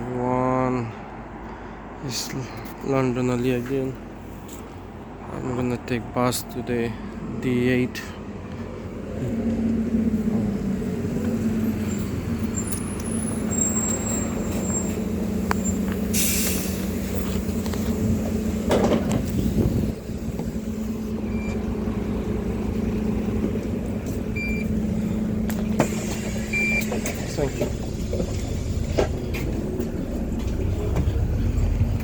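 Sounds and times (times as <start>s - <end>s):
diesel bus engine running: 3.0s - 32.0s
air brakes hissing: 11.8s - 17.7s, 25.0s - 31.2s.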